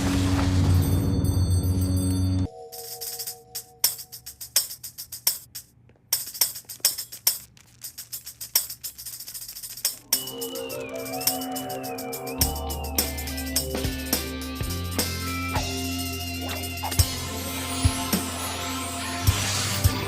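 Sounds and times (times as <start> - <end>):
tambourine jingling hits: 2.8 - 20.0
high wavering tone: 10.1 - 19.3
held chord notes: 10.2 - 19.6.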